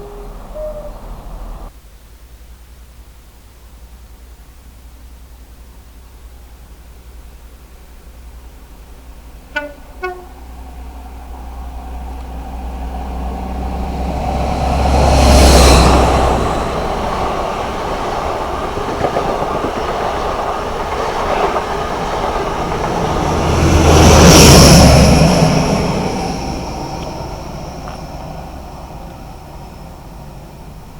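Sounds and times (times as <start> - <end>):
train passing with deep rumble: 0.0 - 1.8, 4.7 - 30.9
rolling wheel noise: 9.4 - 30.9.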